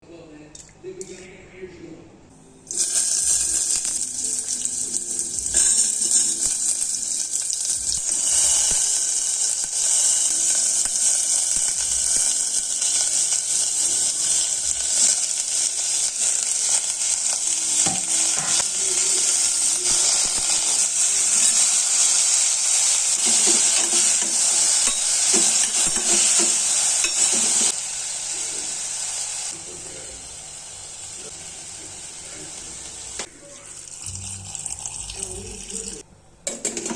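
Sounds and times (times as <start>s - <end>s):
vegetables sizzling in a pan: 2.7s - 33.3s
spoon stirring in a pan: 17.8s - 27.8s.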